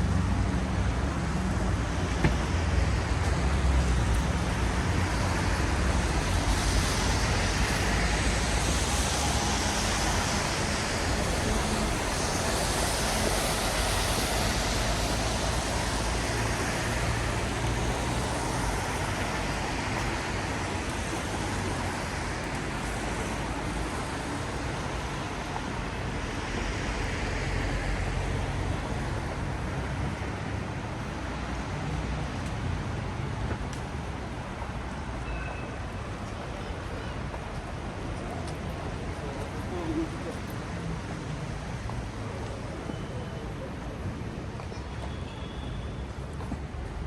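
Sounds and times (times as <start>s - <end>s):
steady rain: 0.0s - 47.0s
tyres hissing on wet road: 0.0s - 47.0s
engines humming: 3.1s - 21.8s.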